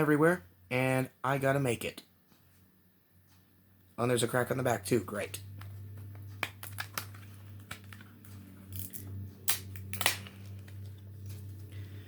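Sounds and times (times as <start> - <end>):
low steady hum: 0.0 - 12.0
plastic case clicking and tapping: 5.6 - 8.2.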